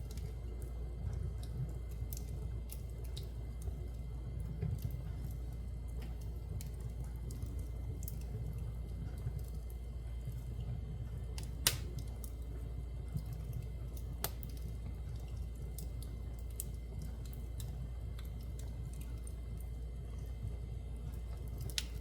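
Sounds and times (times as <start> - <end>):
fire low rumble: 0.0 - 22.0
wood fire crackling: 0.0 - 22.0.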